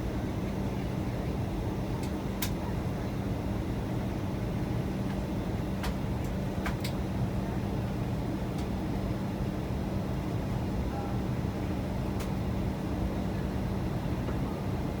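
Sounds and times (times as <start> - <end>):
airliner cabin engine roar: 0.0 - 15.0
constant hum: 0.0 - 15.0.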